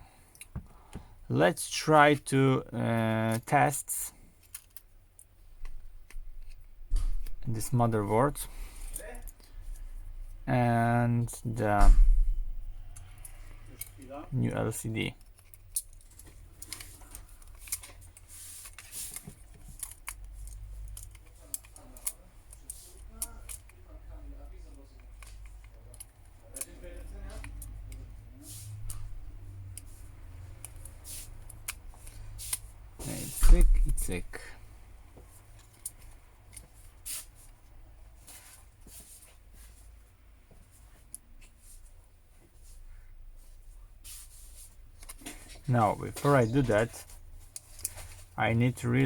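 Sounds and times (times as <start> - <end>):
small parts clicking and rustling: 4.3 - 7.5, 12.3 - 28.2, 28.8 - 34.3, 35.5 - 37.6, 44.9 - 49.0
clicks and taps of small parts: 4.4 - 7.5, 18.6 - 23.8.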